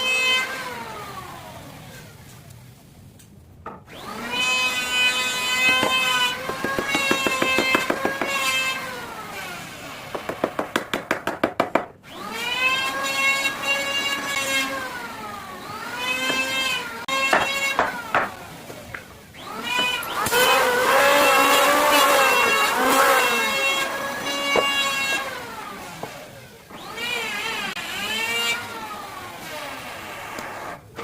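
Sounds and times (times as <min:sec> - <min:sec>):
power tool motor whining: 0:12.0 - 0:30.9.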